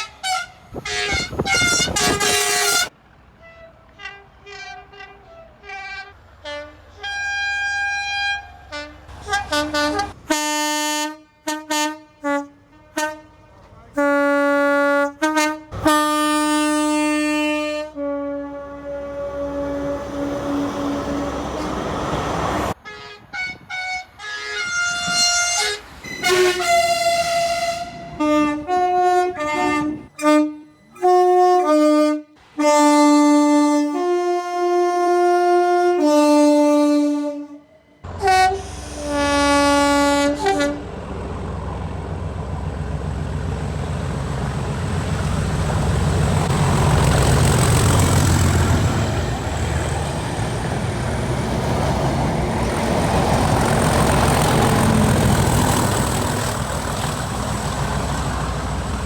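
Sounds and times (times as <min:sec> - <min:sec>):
multi-note air horn: 0:00.0 - 0:13.4, 0:14.0 - 0:21.8, 0:22.8 - 0:40.8
heavy vehicle rumble: 0:00.0 - 0:33.4, 0:37.5 - 0:59.0.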